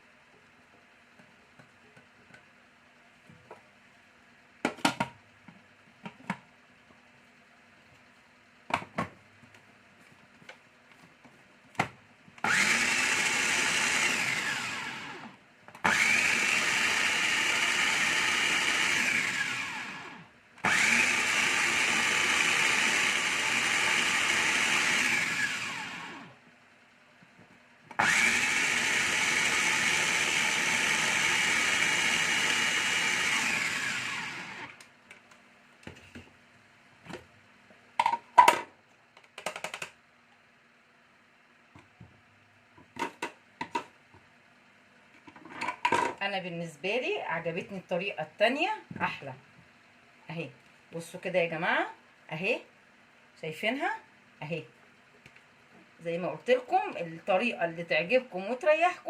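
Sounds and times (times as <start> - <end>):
electric food chopper motor: 12.4 - 26.4, 27.9 - 34.9.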